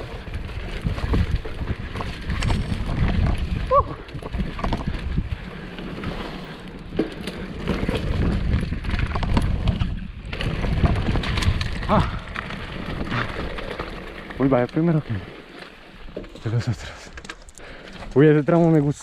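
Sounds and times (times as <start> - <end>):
bike rattling over bumps: 0.0 - 19.0
tyres rushing on dirt: 0.0 - 19.0
person whooping: 3.6 - 4.0.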